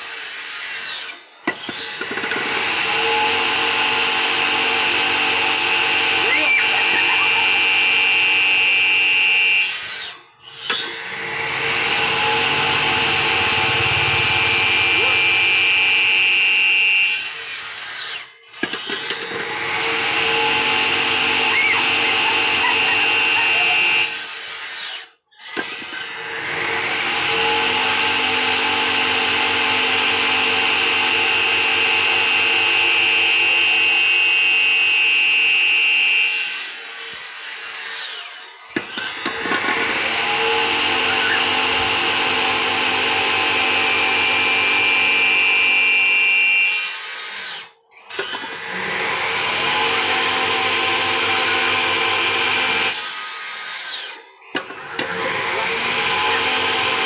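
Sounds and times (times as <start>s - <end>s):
cutting machine whining: 0.0s - 57.0s.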